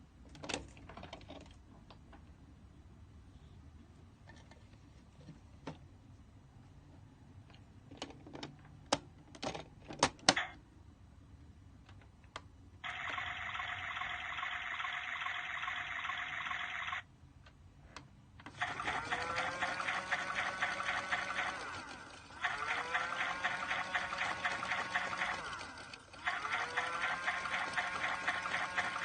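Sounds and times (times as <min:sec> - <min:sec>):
toy rising tone: 0:12.8 - 0:17.0, 0:18.5 - 0:29.0
toy water sound effect hissing: 0:12.9 - 0:17.0, 0:22.4 - 0:25.6.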